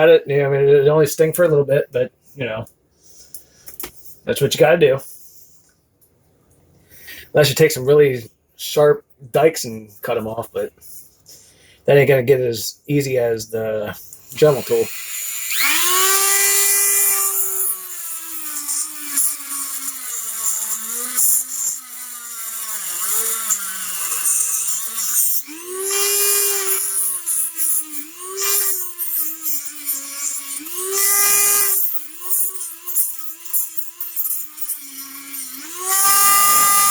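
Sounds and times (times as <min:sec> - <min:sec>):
rotary tool grinding plastic: 0:14.0 - 0:36.9.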